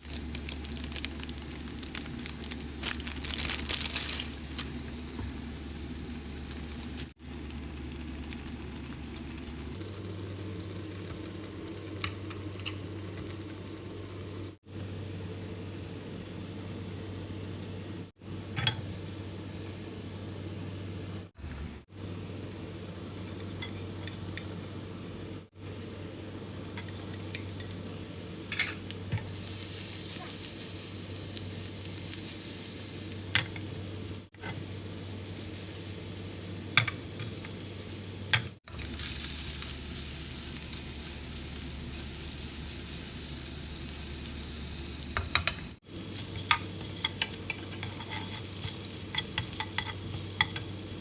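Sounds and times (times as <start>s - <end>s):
food sizzling in a pan: 21.9s - 51.0s.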